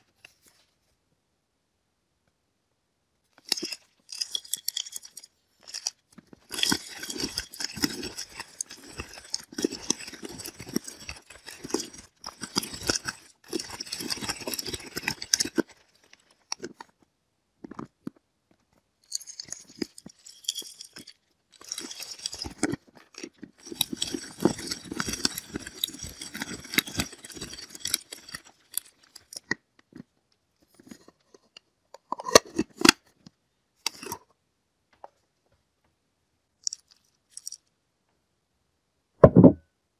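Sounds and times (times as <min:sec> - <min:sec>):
nuts crunching in manual grinder: 0:03.4 - 0:17.0, 0:19.1 - 0:29.6, 0:36.6 - 0:37.6
clicks and knocks: 0:39.2 - 0:39.6.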